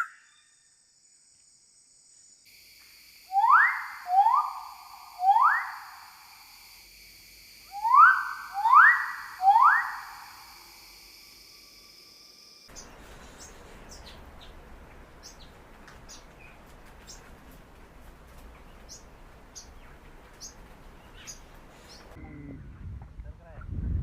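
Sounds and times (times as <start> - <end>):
outdoor background hiss: 0.0 - 24.0
small birds chirping: 12.7 - 22.5.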